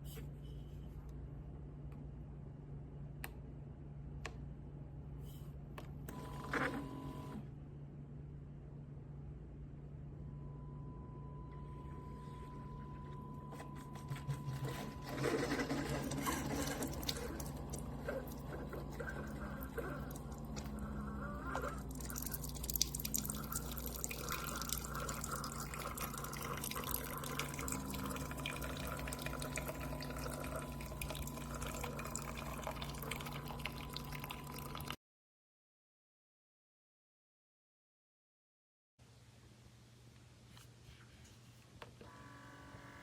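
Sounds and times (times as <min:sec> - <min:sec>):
coffee maker hum: 0:06.0 - 0:07.5, 0:10.2 - 0:35.0, 0:42.0 - 0:43.0
liquid dripping into a cup: 0:16.4 - 0:20.8, 0:21.6 - 0:35.0.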